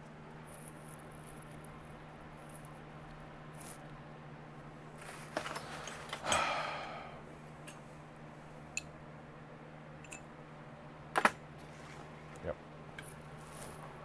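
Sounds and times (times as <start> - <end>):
tools clattering in a drawer: 5.0 - 6.6, 13.0 - 14.0.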